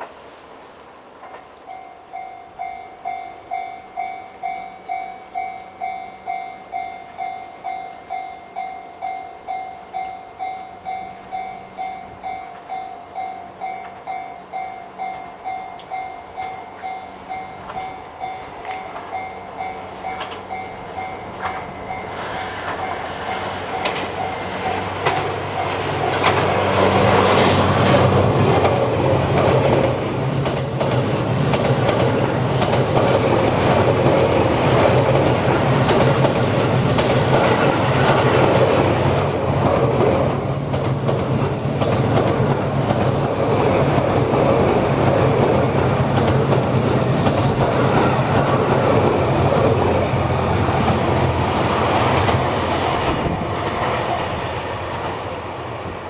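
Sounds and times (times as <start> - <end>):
diesel train engine drone: 0.0 - 56.0
level crossing warning bell: 1.2 - 26.2
wheels clacking over rail joints: 9.4 - 55.8.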